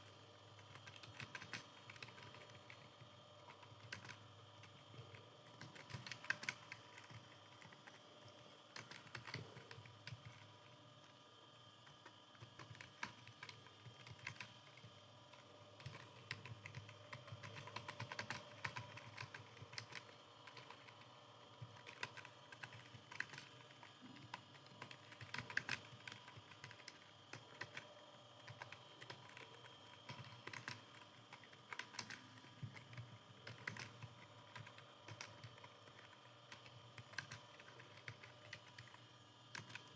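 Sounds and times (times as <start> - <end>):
faint steady hum: 0.0 - 39.9
fast keyboard typing: 0.0 - 39.9.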